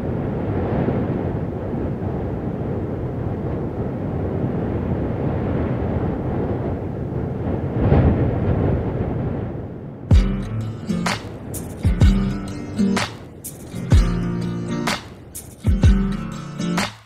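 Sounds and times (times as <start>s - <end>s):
steady rushing noise: 0.0s - 17.0s.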